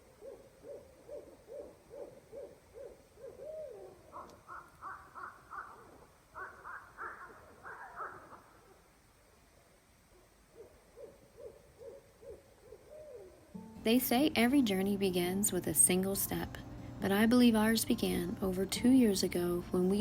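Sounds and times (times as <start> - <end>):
owl wavering call: 0.0 - 8.9, 10.6 - 13.6
owls hooting: 0.0 - 9.0, 10.1 - 13.6.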